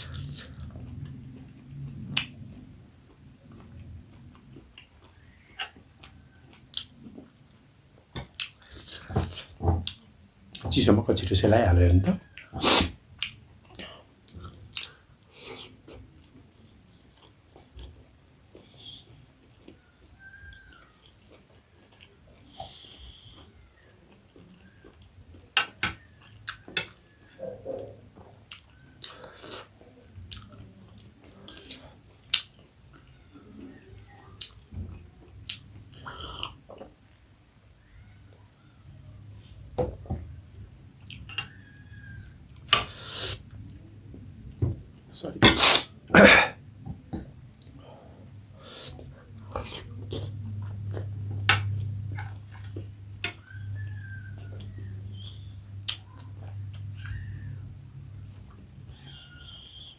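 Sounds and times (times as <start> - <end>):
wet chewing: 0.0 - 10.6, 48.6 - 57.6
low steady hum: 43.4 - 59.9.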